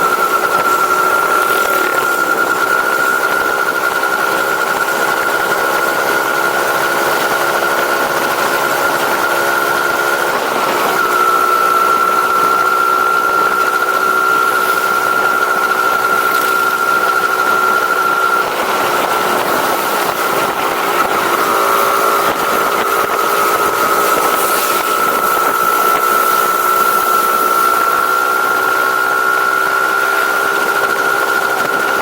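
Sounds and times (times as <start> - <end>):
high whine: 0.0 - 32.0
vehicle engine running: 0.0 - 32.0.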